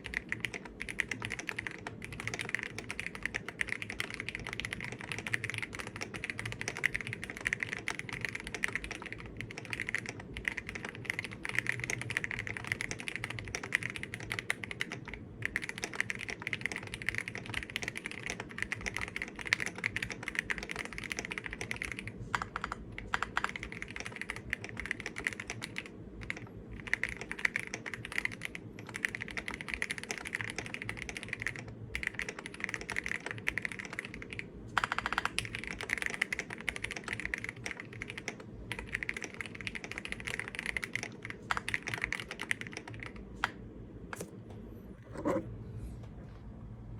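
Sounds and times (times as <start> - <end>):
mechanical keyboard typing: 0.0 - 44.3.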